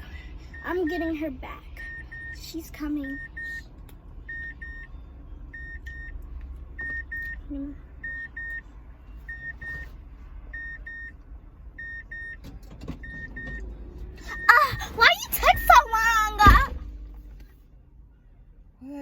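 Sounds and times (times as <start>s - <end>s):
car engine low rumble: 0.0s - 19.0s
car warning chime beeping: 0.5s - 6.2s, 6.8s - 9.9s, 10.5s - 11.2s, 11.8s - 16.8s.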